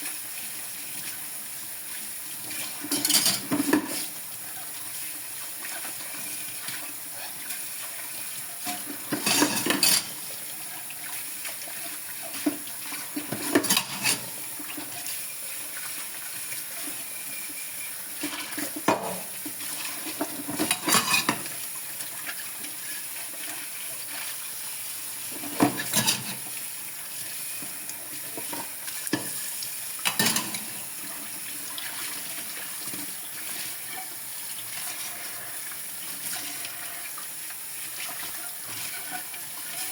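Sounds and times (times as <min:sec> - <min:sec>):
tap water running into sink: 0:00.0 - 0:39.9
dishes and cutlery clattering: 0:02.9 - 0:04.0, 0:08.7 - 0:10.2, 0:13.2 - 0:14.3, 0:20.1 - 0:21.5, 0:25.6 - 0:26.4, 0:30.0 - 0:30.8.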